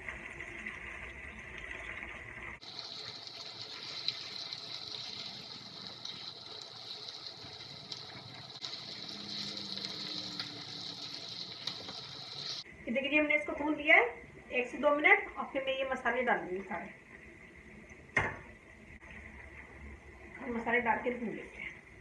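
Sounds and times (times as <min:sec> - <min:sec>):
chicken sizzling in hot oil: 0:02.6 - 0:12.7.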